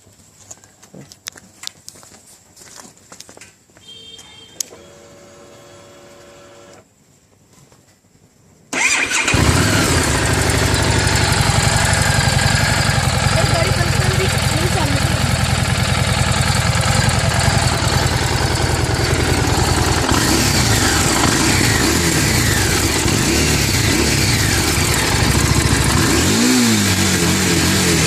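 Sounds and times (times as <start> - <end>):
motorcycle engine idling and revving: 8.8 - 28.0.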